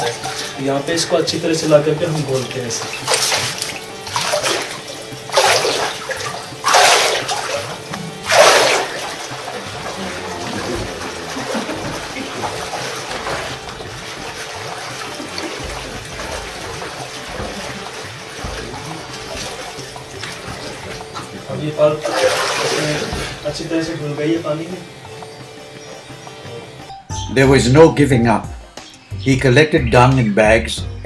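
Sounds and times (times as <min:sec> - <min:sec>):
pulp sloshing in water: 0:00.0 - 0:24.0
water churning: 0:00.0 - 0:26.9.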